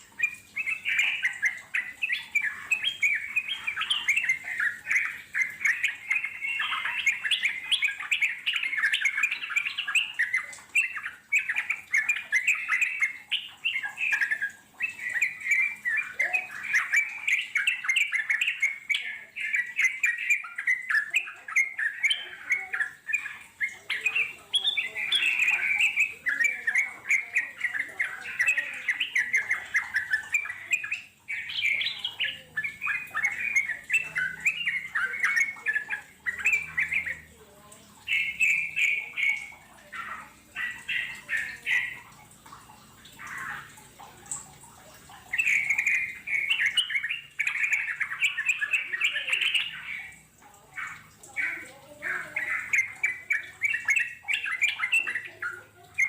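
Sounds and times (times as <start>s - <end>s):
birds singing rapid chattering notes: 0.0s - 56.0s.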